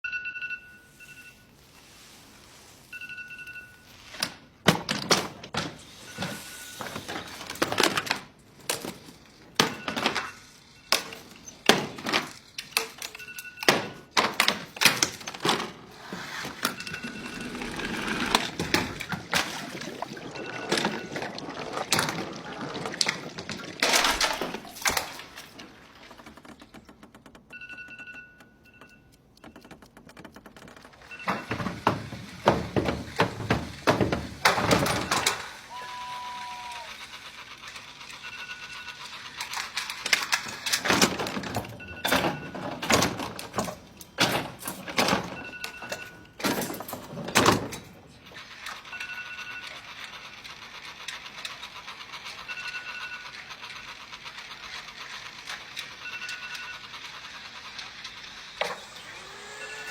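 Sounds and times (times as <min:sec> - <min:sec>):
alarm clock beeping: 0:00.0 - 0:01.8, 0:02.9 - 0:04.1, 0:13.1 - 0:14.2, 0:16.5 - 0:21.6, 0:27.5 - 0:30.0, 0:31.0 - 0:31.8, 0:36.0 - 0:39.4, 0:41.8 - 0:43.0, 0:45.2 - 0:46.4, 0:48.8 - 0:50.2, 0:51.8 - 0:54.2, 0:55.3 - 0:57.4, 0:58.8 - 0:59.9.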